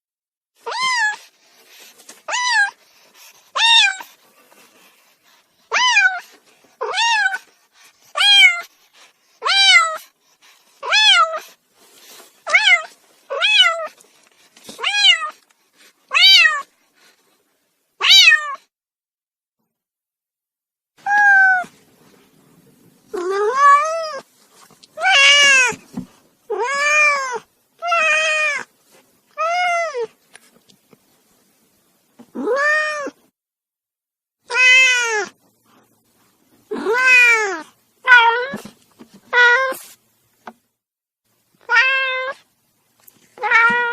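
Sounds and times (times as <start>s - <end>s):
cat meowing: 0.6s - 1.2s, 5.7s - 7.4s, 12.5s - 13.9s, 16.1s - 16.7s, 18.0s - 18.6s, 21.0s - 21.7s, 25.0s - 25.8s, 32.4s - 33.2s, 34.5s - 35.4s, 36.7s - 38.7s, 39.3s - 39.8s, 41.6s - 42.4s, 43.4s - 43.9s.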